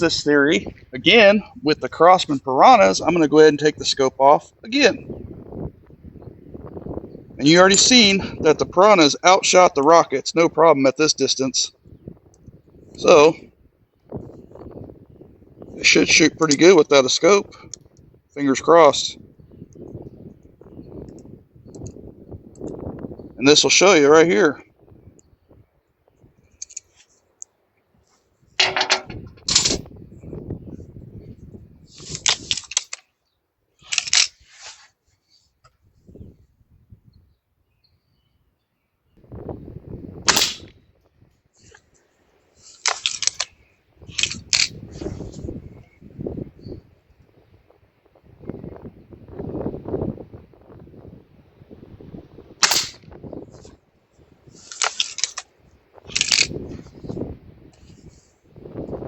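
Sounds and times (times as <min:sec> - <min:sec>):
metallic clicks: 0:28.6 - 0:29.8, 0:32.0 - 0:33.1, 0:42.8 - 0:43.6, 0:56.1 - 0:56.6
air rifle barrel snapping shut: 0:28.6 - 0:29.9, 0:32.0 - 0:33.1, 0:33.9 - 0:34.4, 0:40.3 - 0:40.8, 0:42.8 - 0:45.1, 0:52.6 - 0:53.2, 0:54.6 - 0:55.5, 0:56.1 - 0:56.6
air rifle shot crack: 0:40.2 - 0:40.8, 0:52.6 - 0:53.2.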